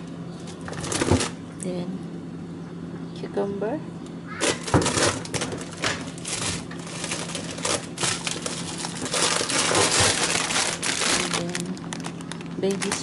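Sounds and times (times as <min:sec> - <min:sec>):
plastic bags rustling: 0:00.4 - 0:01.4, 0:04.4 - 0:13.0.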